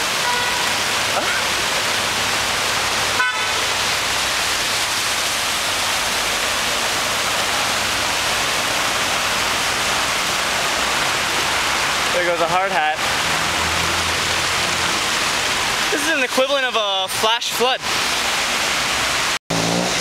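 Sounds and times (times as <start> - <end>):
floodwater rushing: 0.0 - 20.0
car horn beep: 0.2 - 0.7, 3.2 - 3.6.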